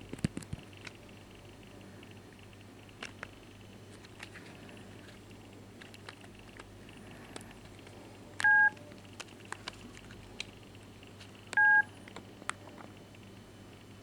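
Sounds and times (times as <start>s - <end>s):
mobile phone beeping: 8.4s - 8.8s, 11.6s - 11.9s.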